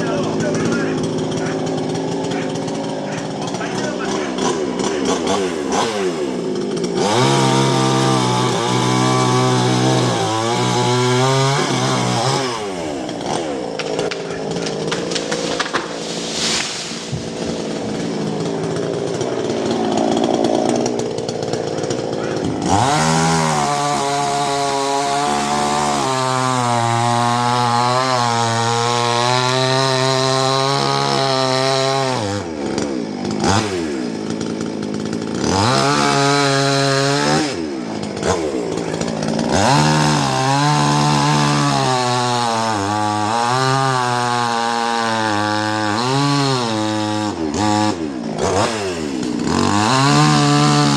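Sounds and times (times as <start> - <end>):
chainsaw running: 0.0 - 50.9.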